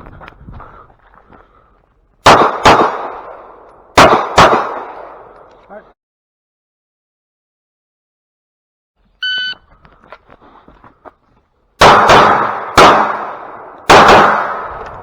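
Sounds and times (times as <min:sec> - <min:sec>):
loud pistol shots: 0:02.2 - 0:05.3, 0:11.8 - 0:15.0
shot timer beep: 0:09.2 - 0:09.6.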